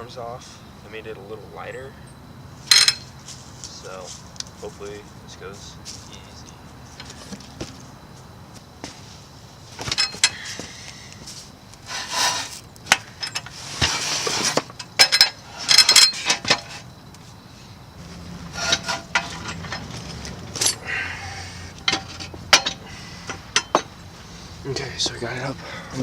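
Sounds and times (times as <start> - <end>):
metal ringing: 1.6 - 3.2, 9.8 - 10.4, 18.3 - 24.1
steel clanking and scraping: 2.7 - 3.2, 9.8 - 10.4, 11.8 - 16.9, 18.0 - 26.0.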